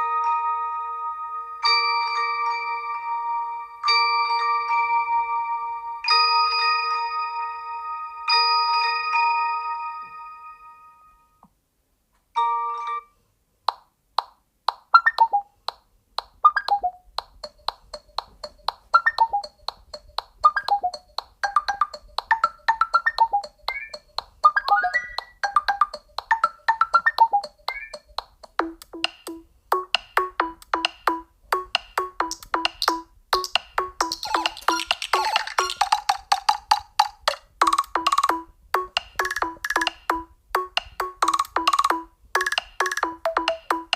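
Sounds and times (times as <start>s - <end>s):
chime-like ringtone: 0.0s - 11.3s, 12.4s - 13.2s
fast mallet-like melody: 16.5s - 43.9s.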